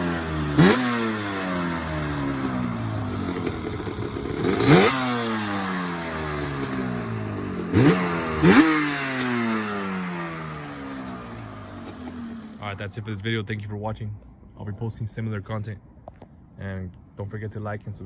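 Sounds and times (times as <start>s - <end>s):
two-stroke engine revving: 0.0s - 12.8s.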